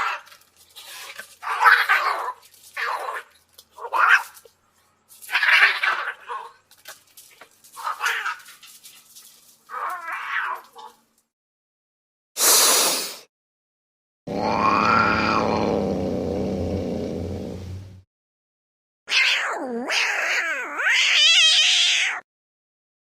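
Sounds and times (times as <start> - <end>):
cat yowling: 7.8 - 8.4, 9.7 - 11.0, 14.3 - 15.8, 19.1 - 22.2
cat growling: 14.3 - 18.0.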